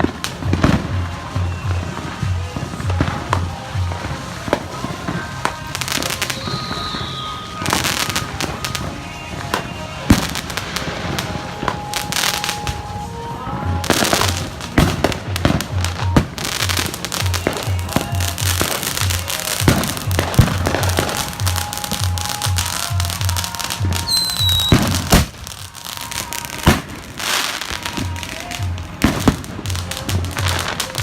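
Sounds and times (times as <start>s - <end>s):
music with thumping bass beat: 0.0s - 6.4s, 13.8s - 27.0s
fireworks bangs and crackling: 0.0s - 31.0s.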